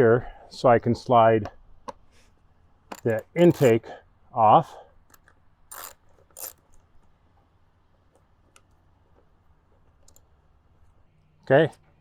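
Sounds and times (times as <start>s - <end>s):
short rasping scrapes: 3.0s - 3.8s.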